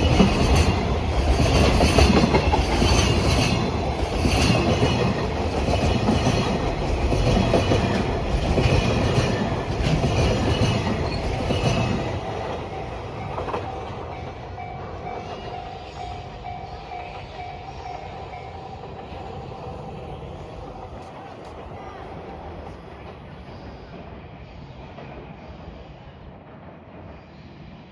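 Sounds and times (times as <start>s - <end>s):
train wheels clacking over rail joints: 0.0s - 17.5s.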